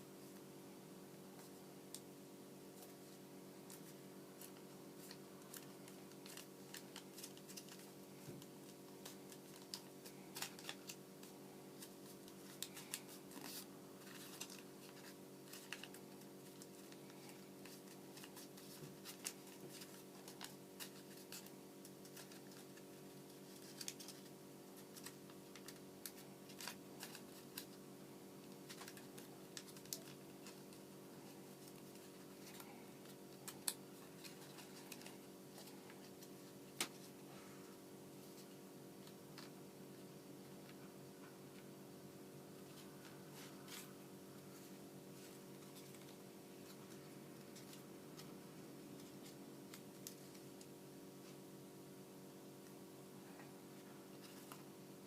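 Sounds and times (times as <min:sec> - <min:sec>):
faint steady hum: 0:00.0 - 0:55.0
paper being folded and creased: 0:03.7 - 0:27.8, 0:28.4 - 0:37.2.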